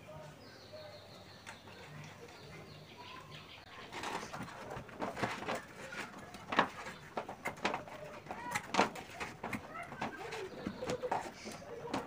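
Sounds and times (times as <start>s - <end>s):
rubber inner tube rustling and squeaking: 3.7s - 12.0s.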